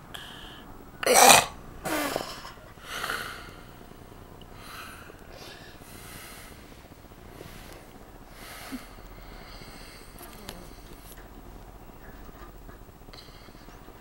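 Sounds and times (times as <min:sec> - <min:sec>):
faint breathing: 0:00.0 - 0:00.9, 0:01.9 - 0:13.9
man snoring: 0:00.0 - 0:03.9.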